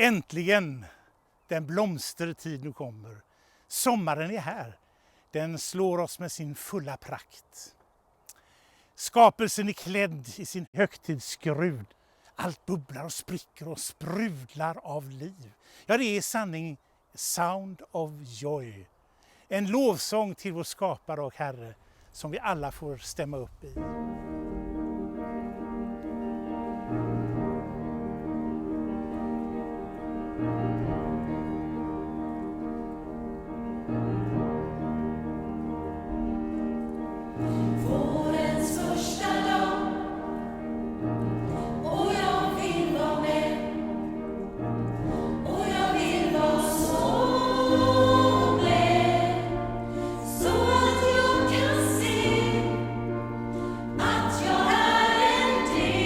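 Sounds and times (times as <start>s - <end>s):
gospel choir singing: 25.5s - 56.0s.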